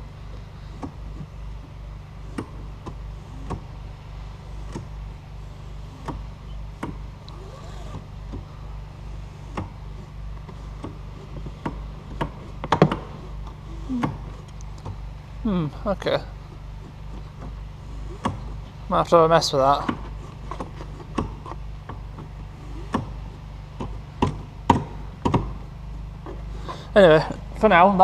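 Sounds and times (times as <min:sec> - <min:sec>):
seat belt retractor clicking: 0:00.7 - 0:01.4, 0:02.2 - 0:03.7, 0:04.6 - 0:05.0, 0:05.9 - 0:08.5, 0:09.3 - 0:15.0, 0:16.5 - 0:18.8, 0:19.8 - 0:26.6.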